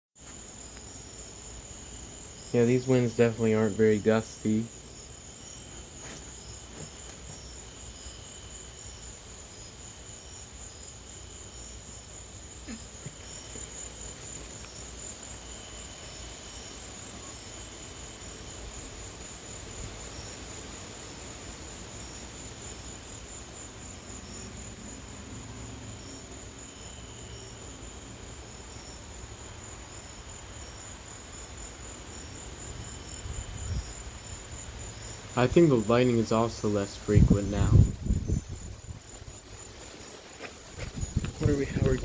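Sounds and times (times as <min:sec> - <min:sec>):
crickets trilling: 0:00.2 - 0:42.0
insect chirps: 0:00.2 - 0:42.0
light wind rumble: 0:13.0 - 0:42.0.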